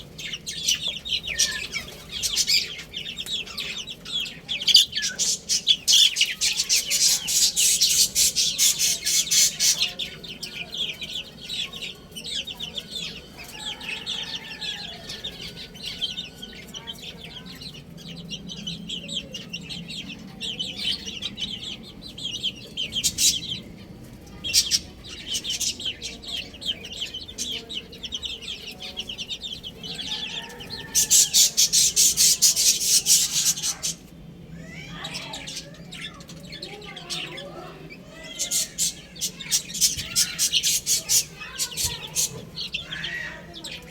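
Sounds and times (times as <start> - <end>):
baby chicks peeping: 0.0 - 43.9.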